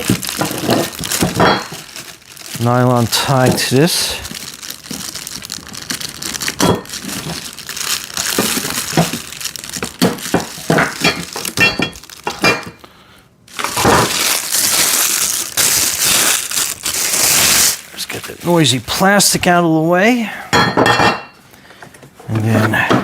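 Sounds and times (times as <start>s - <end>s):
plastic packaging crinkling: 0.0s - 12.9s, 13.5s - 19.7s.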